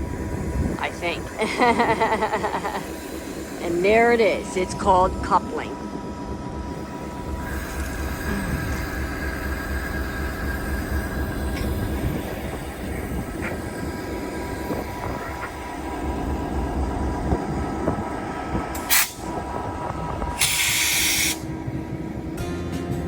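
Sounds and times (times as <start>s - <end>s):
diesel locomotive drone: 0.0s - 23.0s
air hissing: 7.4s - 21.6s.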